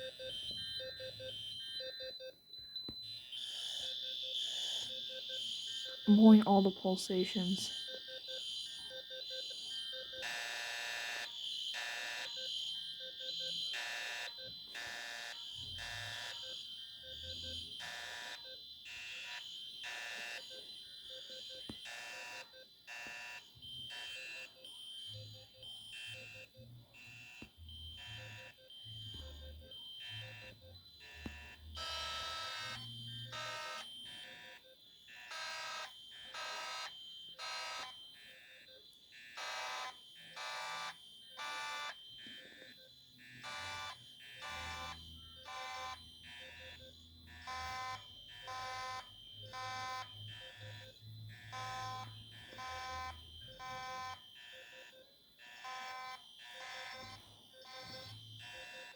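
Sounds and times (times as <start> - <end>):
fire alarm horns pulsing: 3.3 - 58.9.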